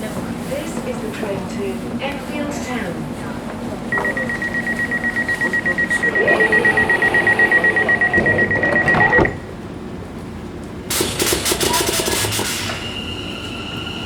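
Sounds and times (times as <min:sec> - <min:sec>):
high-pitched warning beeping: 0:03.9 - 0:09.6.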